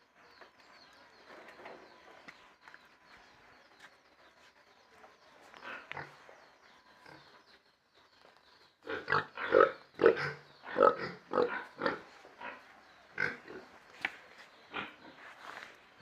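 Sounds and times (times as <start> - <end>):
pigs grunting: 5.6 - 7.4, 8.8 - 13.9, 14.7 - 15.2.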